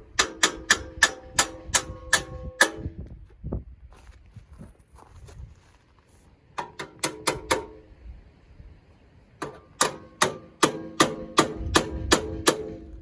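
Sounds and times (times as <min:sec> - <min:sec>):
hammer striking steel: 0:00.0 - 0:03.0, 0:06.6 - 0:07.9, 0:09.4 - 0:13.0.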